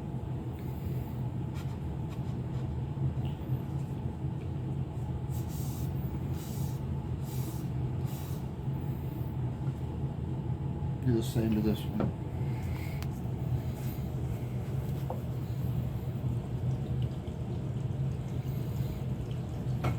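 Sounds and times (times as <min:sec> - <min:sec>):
low background hum: 0:00.0 - 0:19.9.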